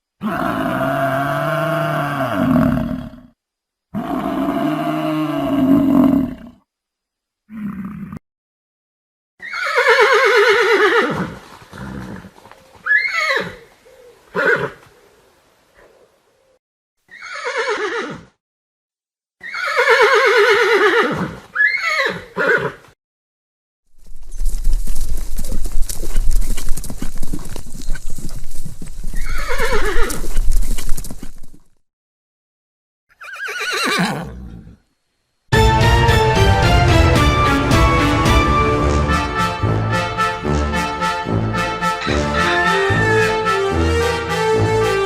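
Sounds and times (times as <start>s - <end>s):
horse neighing: 9.4s - 14.8s, 17.1s - 18.3s, 19.4s - 22.8s, 29.2s - 30.2s, 33.1s - 34.8s
horse hooves clip-clopping: 11.2s - 15.0s, 23.9s - 31.7s.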